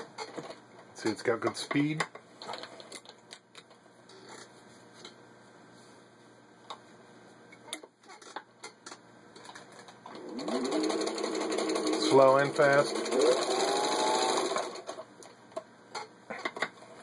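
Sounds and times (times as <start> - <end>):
sewing machine motor stitching: 10.1 - 15.0.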